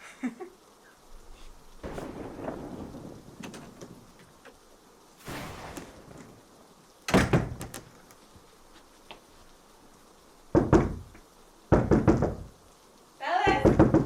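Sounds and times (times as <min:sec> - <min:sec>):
knocking on a door: 0:10.5 - 0:11.1, 0:11.7 - 0:12.5, 0:13.5 - 0:14.0.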